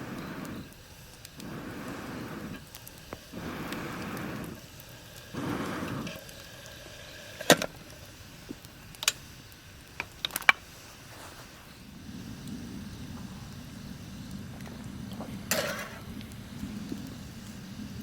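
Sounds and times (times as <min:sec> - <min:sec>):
rustling: 0:10.1 - 0:18.0.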